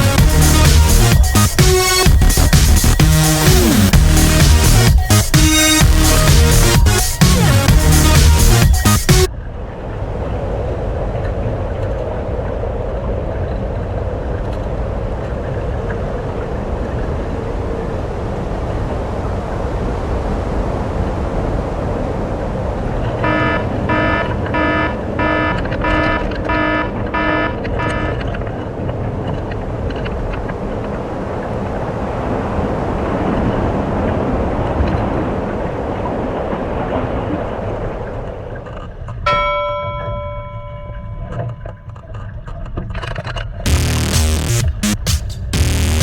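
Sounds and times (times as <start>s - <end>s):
pulsing pitched hum: 0.0s - 9.3s, 23.0s - 28.4s, 43.7s - 46.0s
water rushing along hulls: 0.0s - 43.8s
wind buffeting the microphone: 9.5s - 39.1s.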